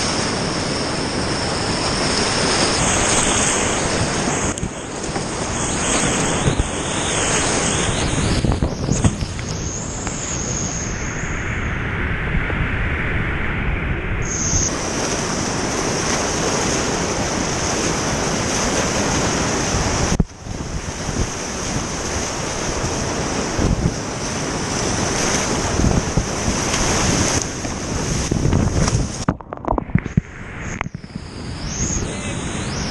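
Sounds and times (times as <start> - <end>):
wind buffeting microphone: 0.0 - 32.9
whitewater rushing: 14.6 - 32.9.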